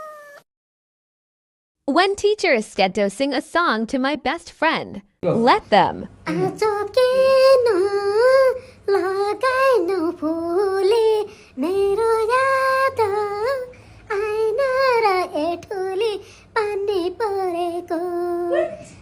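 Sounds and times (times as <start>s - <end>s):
child singing unaccompanied: 6.1s - 19.0s.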